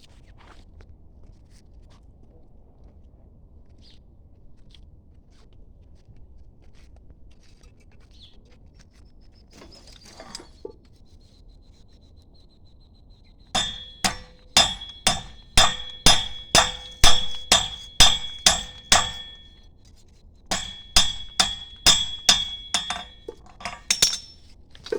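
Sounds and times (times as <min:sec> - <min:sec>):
hammer ringing on steel blade: 0:13.6 - 0:19.4, 0:20.5 - 0:24.4.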